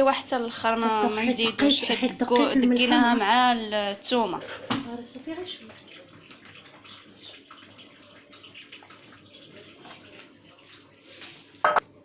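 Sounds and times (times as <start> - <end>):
water splashing into pot: 4.6 - 11.8.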